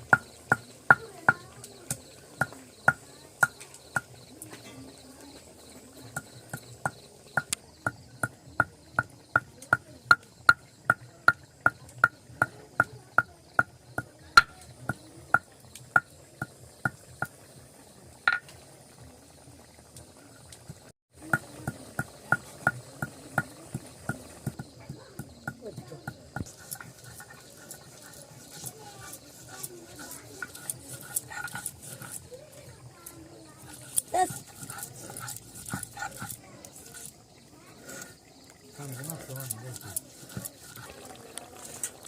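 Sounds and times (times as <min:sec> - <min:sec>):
kitchen utensil knocking: 0:18.3 - 0:18.5.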